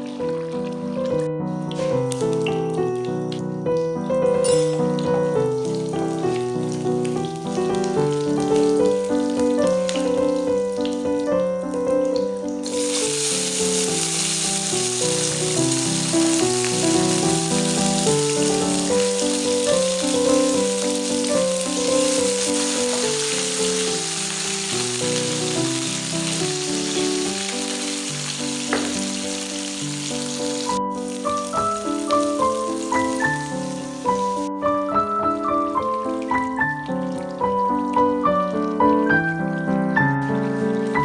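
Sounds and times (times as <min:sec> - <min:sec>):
food sizzling in hot oil: 0:00.0 - 0:41.0
melodic background music: 0:00.0 - 0:41.0.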